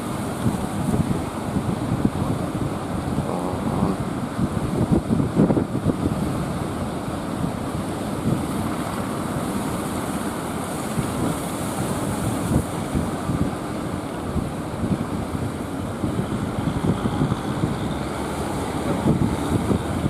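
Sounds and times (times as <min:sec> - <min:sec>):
ocean surf breaking: 0:00.0 - 0:20.0
wind buffeting microphone: 0:00.0 - 0:20.0.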